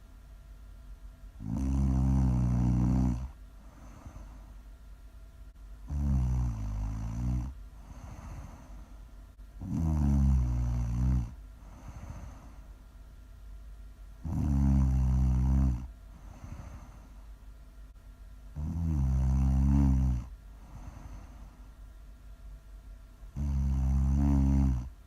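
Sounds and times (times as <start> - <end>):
loud low snoring: 1.4 - 4.4, 5.8 - 8.8, 9.6 - 12.6, 14.2 - 17.0, 18.5 - 21.4, 23.3 - 25.0.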